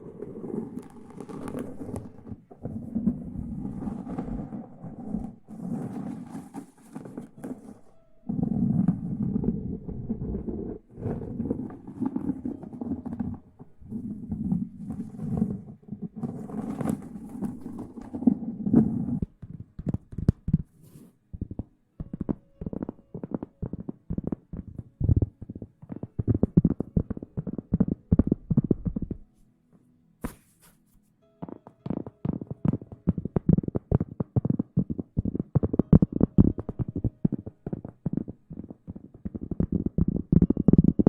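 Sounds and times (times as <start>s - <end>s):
close rustling and rubbing: 0.0s - 19.4s, 20.6s - 21.2s, 30.2s - 31.2s.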